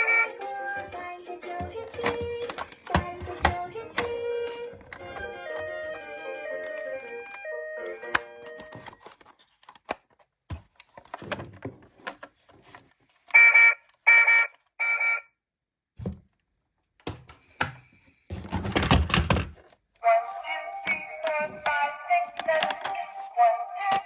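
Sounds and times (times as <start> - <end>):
short electronic beeps: 13.4 - 15.3.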